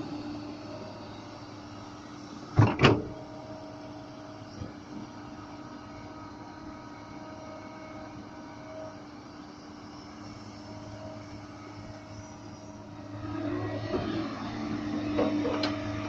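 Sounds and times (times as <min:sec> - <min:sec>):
excavator diesel engine humming: 0:00.0 - 0:16.0.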